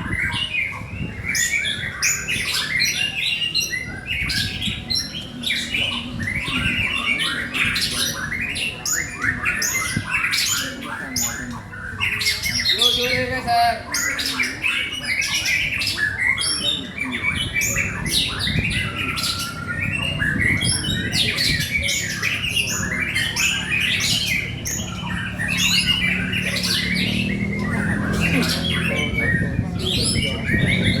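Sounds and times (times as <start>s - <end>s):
songbird singing varied notes: 0.0s - 31.0s.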